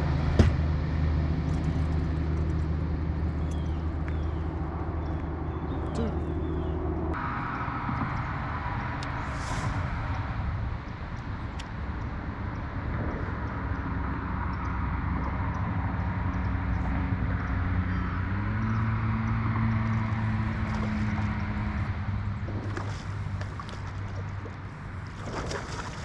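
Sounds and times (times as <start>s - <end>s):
boat motor running: 0.0s - 9.0s, 10.2s - 26.0s.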